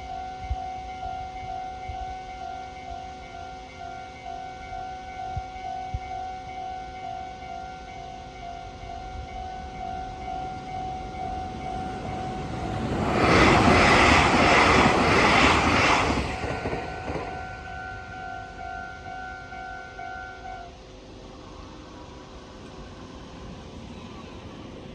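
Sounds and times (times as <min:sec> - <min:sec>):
level crossing warning bell ringing: 0:00.0 - 0:13.1
electric train rushing past: 0:00.0 - 0:24.9.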